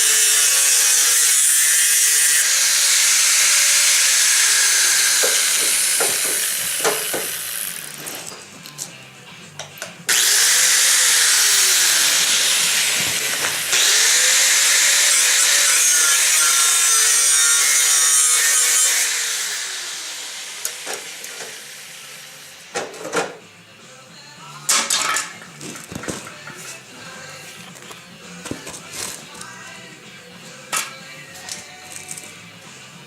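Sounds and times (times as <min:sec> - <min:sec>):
power tool cutting sheet metal: 0:00.0 - 0:08.4, 0:10.1 - 0:23.4
motor winding down whine: 0:19.1 - 0:22.7.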